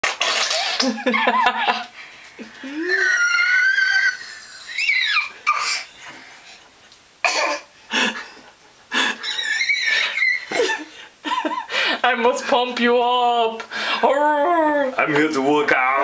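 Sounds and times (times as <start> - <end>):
baby laughing: 2.7 - 5.9, 9.1 - 11.5
baby squealing: 2.7 - 5.9, 9.2 - 10.6.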